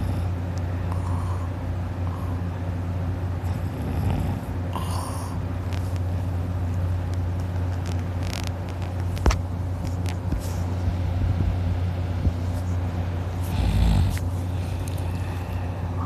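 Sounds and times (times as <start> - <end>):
man snoring: 0.0 - 1.5, 3.4 - 5.4, 13.4 - 15.4.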